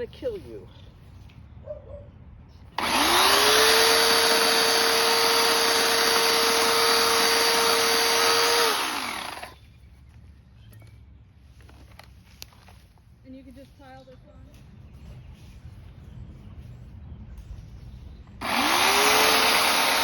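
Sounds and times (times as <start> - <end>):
chainsaw running: 2.8 - 9.6, 18.4 - 20.0.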